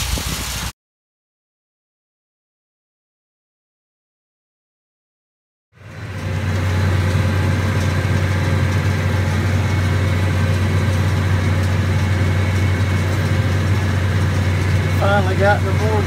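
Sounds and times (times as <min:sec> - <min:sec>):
tractor engine running: 0:05.8 - 0:16.0.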